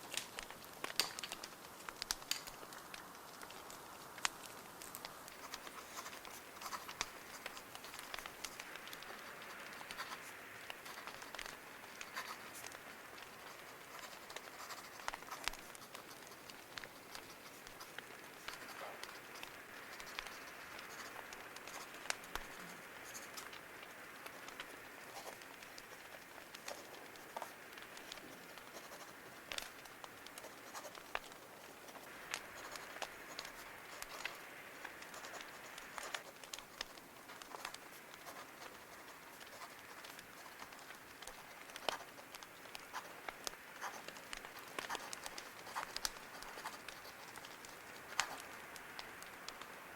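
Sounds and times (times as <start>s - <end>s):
fire crackling: 0.0s - 49.9s
paper being scratched: 13.4s - 16.4s.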